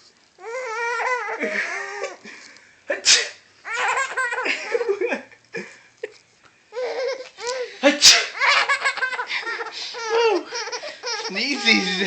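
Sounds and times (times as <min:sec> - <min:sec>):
person sneezing: 0:02.9 - 0:03.4, 0:07.8 - 0:08.4
baby laughing: 0:03.7 - 0:05.2, 0:06.7 - 0:12.0.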